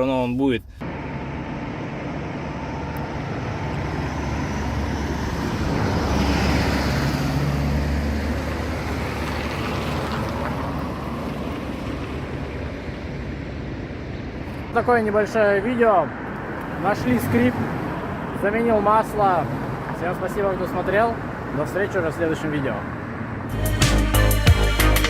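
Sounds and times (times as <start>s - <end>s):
vehicle passing by: 0.8s - 14.7s, 15.9s - 23.5s.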